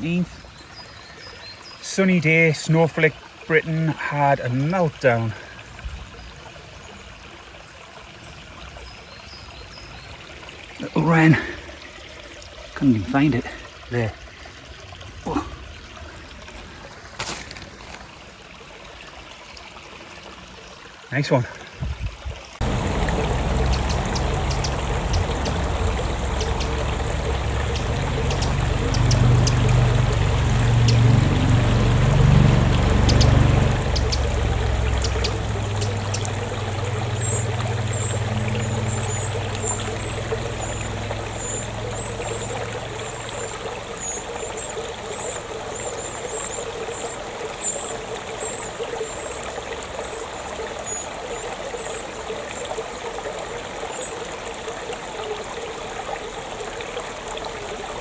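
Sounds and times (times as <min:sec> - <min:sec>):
stream trickling: 0:00.0 - 0:58.0
low rumble: 0:22.6 - 0:36.8
high rapid twittering: 0:22.6 - 0:42.4.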